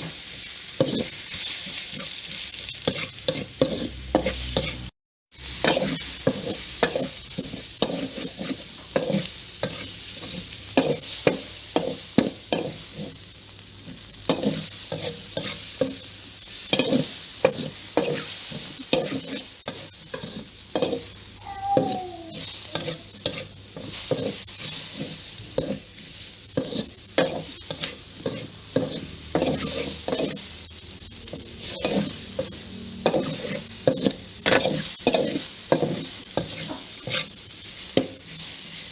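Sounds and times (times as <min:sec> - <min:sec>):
food sizzling in a pan: 0:00.0 - 0:38.9
utensil scraping a pan: 0:02.8 - 0:04.9, 0:21.8 - 0:30.4, 0:31.3 - 0:37.4.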